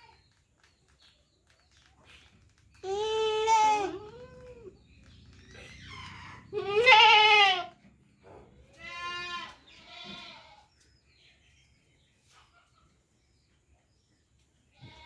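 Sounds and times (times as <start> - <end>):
goats bleating: 2.8 - 4.7, 6.5 - 7.8, 8.7 - 10.6.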